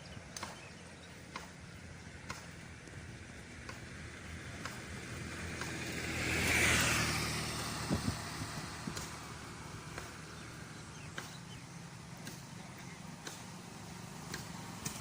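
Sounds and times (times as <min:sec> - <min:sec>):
low engine hum: 0:00.0 - 0:15.0
vehicle passing close by: 0:01.3 - 0:15.0.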